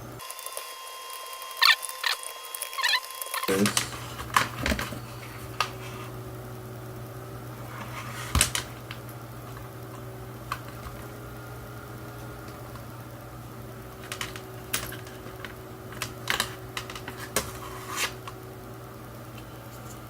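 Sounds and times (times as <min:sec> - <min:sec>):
steady low hum: 0:00.0 - 0:00.2, 0:03.5 - 0:20.0
plastic parts clicking: 0:14.0 - 0:18.4.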